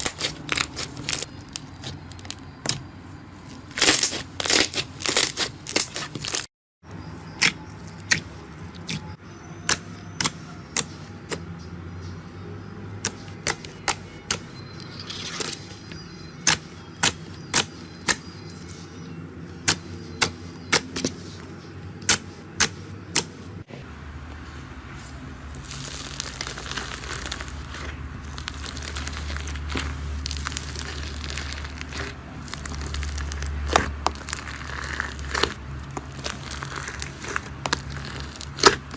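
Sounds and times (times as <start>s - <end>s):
slime crackling when squeezed: 25.5s - 38.9s.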